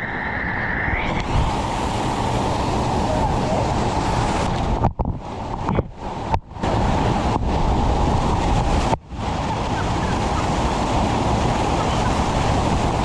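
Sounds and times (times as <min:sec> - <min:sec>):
waterfall roaring: 0:00.5 - 0:13.0.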